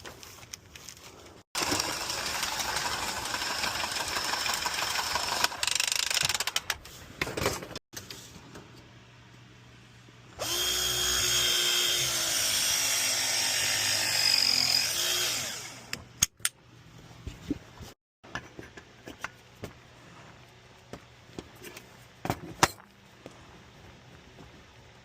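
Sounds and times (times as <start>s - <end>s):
power drill running: 1.6s - 6.2s, 10.4s - 16.0s.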